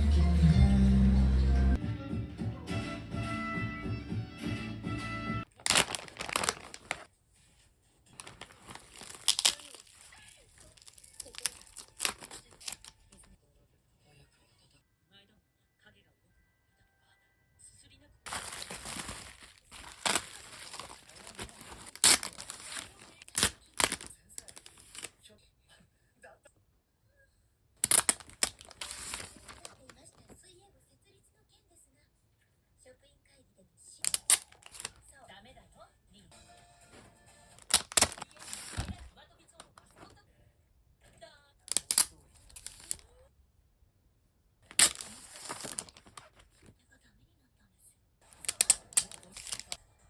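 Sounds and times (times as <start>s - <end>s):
packaging ripping: 5.5s - 7.1s, 8.2s - 13.2s, 18.3s - 25.1s, 27.8s - 30.3s, 34.0s - 34.9s, 37.6s - 39.1s, 41.7s - 43.0s, 44.7s - 46.7s, 48.4s - 49.8s
packaging rustling: 5.5s - 7.1s, 8.2s - 13.2s, 18.3s - 25.1s, 27.8s - 30.4s, 34.0s - 34.9s, 37.6s - 39.1s, 41.7s - 43.0s, 44.7s - 46.7s, 48.4s - 49.8s.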